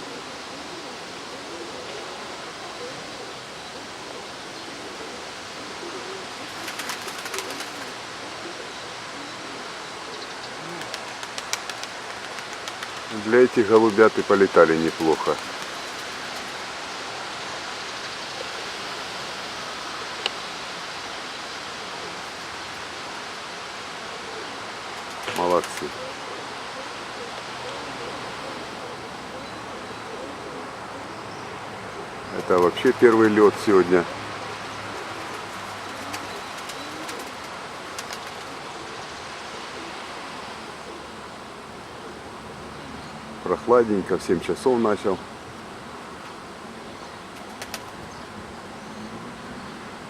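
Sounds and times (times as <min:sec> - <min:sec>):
wind hiss: 0:00.0 - 0:50.0
faint sharp clicks: 0:20.2 - 0:20.4, 0:27.4 - 0:27.8.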